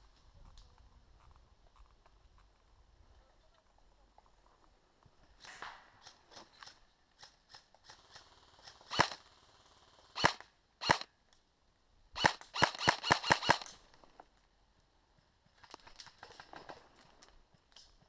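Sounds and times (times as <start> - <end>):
airsoft guns firing: 5.4 - 9.3, 10.2 - 11.1, 12.2 - 13.8.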